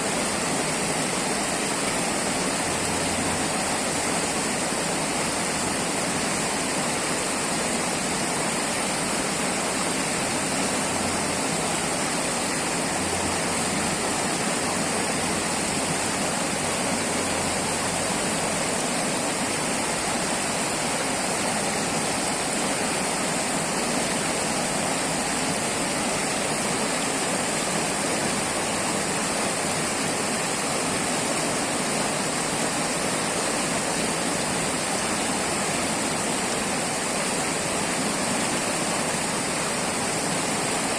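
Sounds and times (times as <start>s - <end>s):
river water rushing: 0.0s - 40.9s.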